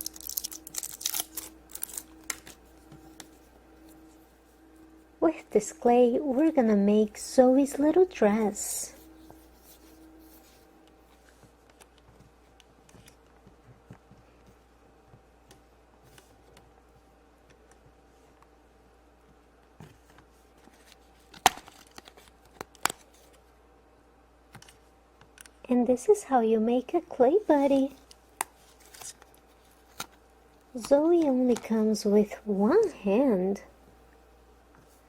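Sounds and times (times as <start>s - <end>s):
hands rubbing modelling clay: 8.8s - 12.3s.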